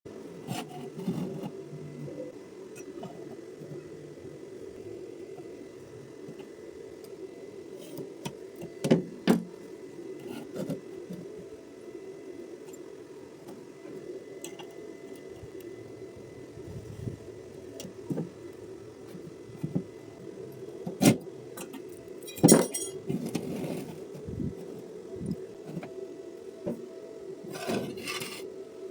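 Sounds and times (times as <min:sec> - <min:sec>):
steady low hum: 0:00.1 - 0:28.9
metal pieces clinking: 0:22.2 - 0:23.0.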